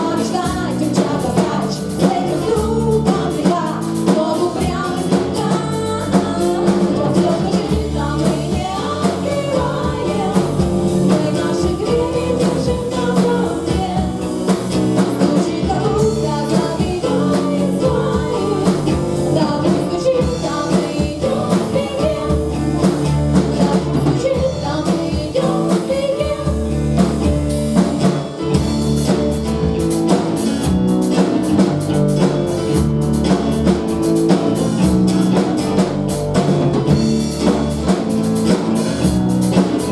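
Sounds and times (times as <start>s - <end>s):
person singing: 0.0s - 27.4s
drum kit beat: 0.0s - 39.9s
guitar: 0.0s - 39.9s.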